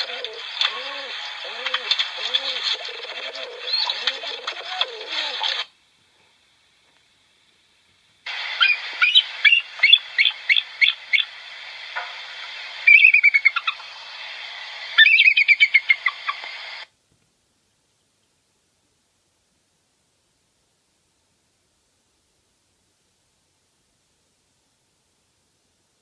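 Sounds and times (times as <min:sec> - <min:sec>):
faint hiss: 0:00.0 - 0:26.0
eagle chirping: 0:08.5 - 0:11.4, 0:12.6 - 0:13.9, 0:15.0 - 0:16.6.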